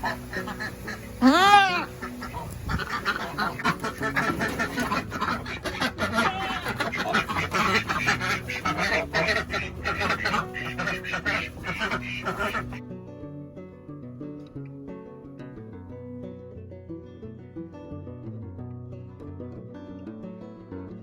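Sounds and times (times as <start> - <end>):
ducks quacking: 0.0 - 12.8.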